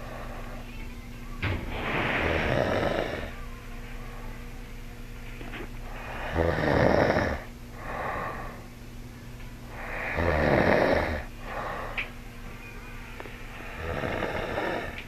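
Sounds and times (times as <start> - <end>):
man snoring: 2.0 - 3.4, 6.0 - 8.6, 9.8 - 12.0, 13.6 - 15.0
soft breath: 7.8 - 8.7, 11.4 - 12.2.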